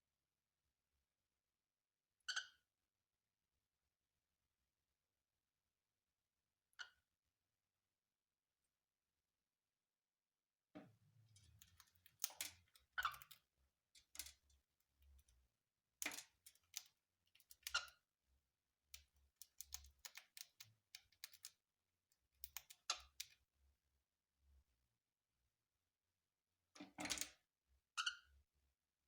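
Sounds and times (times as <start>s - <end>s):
light clicks and scratchy taps: 16.0s - 18.0s, 19.0s - 23.4s.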